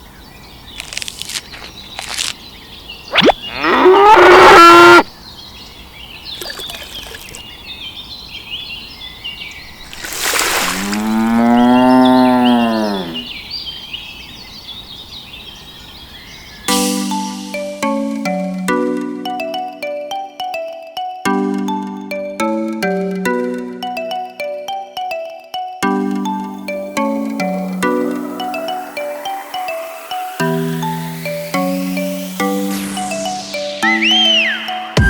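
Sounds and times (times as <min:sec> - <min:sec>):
cattle mooing: 0:03.5 - 0:05.0, 0:10.7 - 0:13.3.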